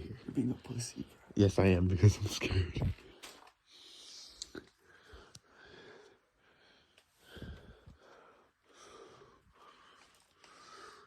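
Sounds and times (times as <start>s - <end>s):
person breathing close: 3.7s - 11.0s.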